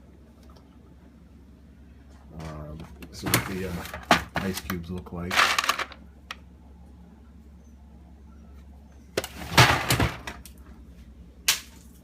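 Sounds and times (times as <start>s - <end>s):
ice cubes clattering: 5.3s - 6.0s.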